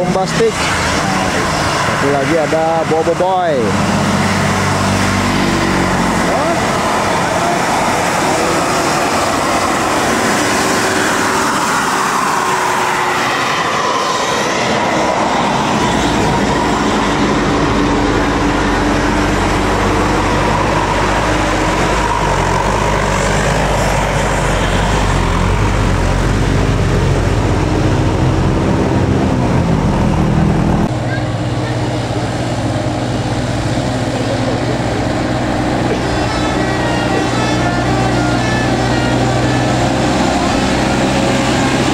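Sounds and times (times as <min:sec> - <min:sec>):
diesel bus engines rumbling: 0:00.0 - 0:41.9
traffic noise: 0:00.0 - 0:41.9
long horn-like tones: 0:34.6 - 0:41.9.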